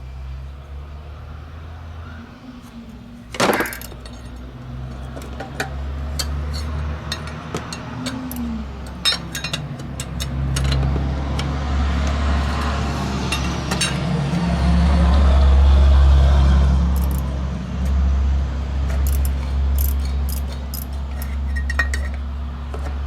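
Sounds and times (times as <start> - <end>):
metal hand tools clinking: 3.4 - 14.1, 17.0 - 17.3, 18.9 - 22.3.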